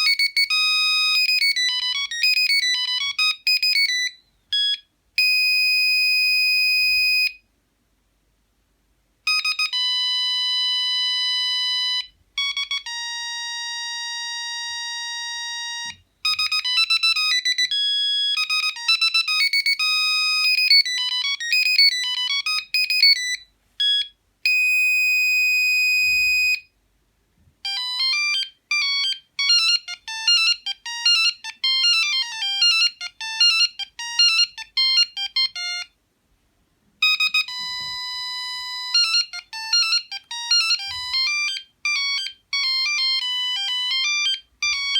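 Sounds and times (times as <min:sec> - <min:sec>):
phone ringtones: 0:00.0 - 0:07.4, 0:09.3 - 0:26.7, 0:27.6 - 0:35.9, 0:37.0 - 0:44.9.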